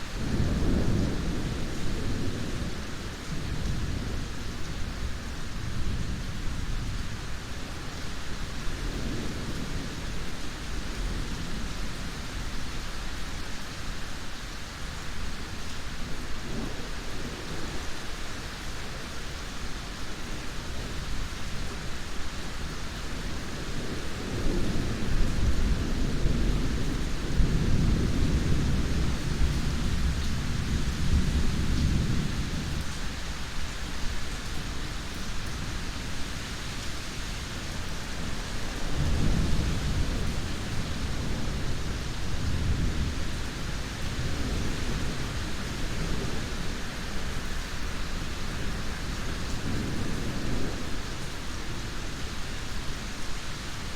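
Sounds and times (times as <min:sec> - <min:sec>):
low rolling thunder: 0:00.0 - 0:12.5, 0:22.5 - 0:34.7, 0:37.5 - 0:52.6
heavy rain: 0:00.0 - 0:53.9.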